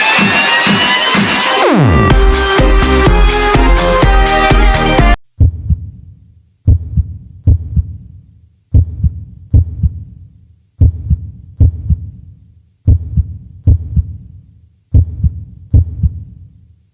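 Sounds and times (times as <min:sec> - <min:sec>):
deep heartbeat thumps: 0:02.1 - 0:06.0, 0:06.6 - 0:08.1, 0:08.7 - 0:10.1, 0:10.8 - 0:12.2, 0:12.8 - 0:14.3, 0:14.9 - 0:16.4.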